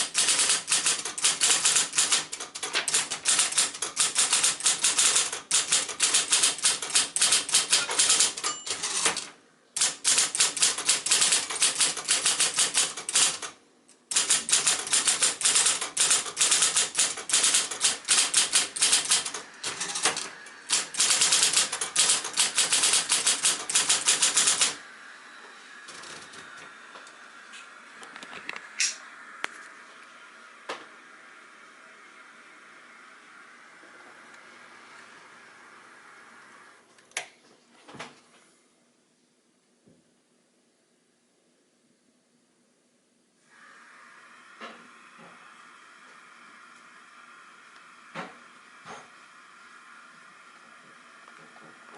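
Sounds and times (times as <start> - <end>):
electric typewriter typing: 0.0 - 24.8.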